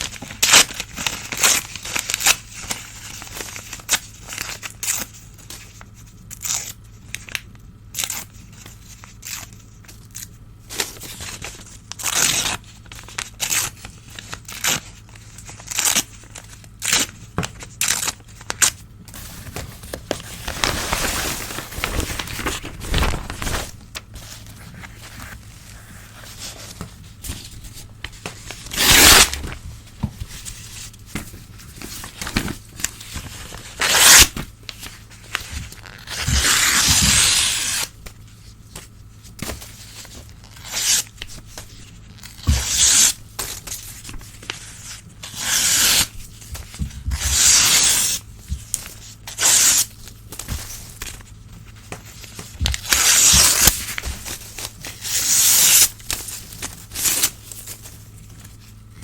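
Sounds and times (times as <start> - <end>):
newspaper tearing: 10.2 - 29.6, 31.8 - 38.0, 39.5 - 48.3, 48.9 - 51.4, 52.2 - 58.9
paper rustling: 17.4 - 59.0.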